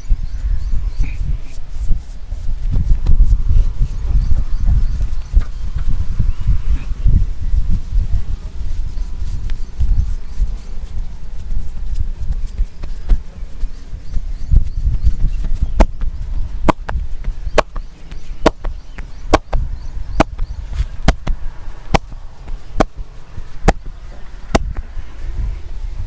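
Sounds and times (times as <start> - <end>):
hands slapping body: 15.5 - 19.6.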